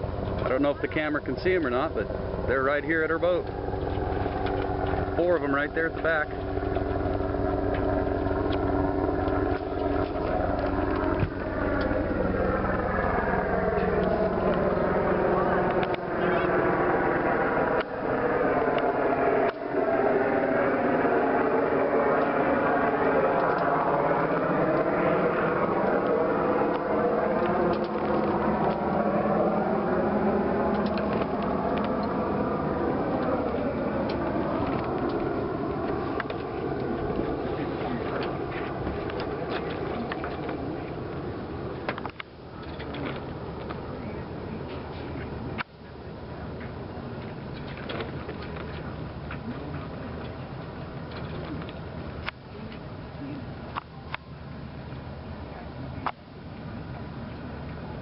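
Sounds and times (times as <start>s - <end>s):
steady rushing of water: 0.0s - 45.6s
boat engine throbbing: 0.0s - 53.7s.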